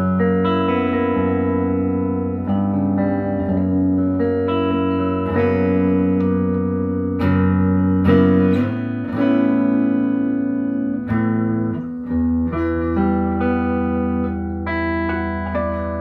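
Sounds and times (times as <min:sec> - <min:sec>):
electric guitar chords strummed: 0:00.0 - 0:16.0.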